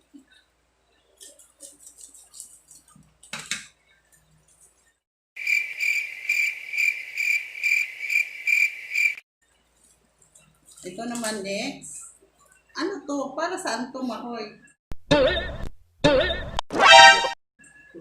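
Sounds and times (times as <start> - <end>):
cricket chirping sound effect: 5.4 - 9.2.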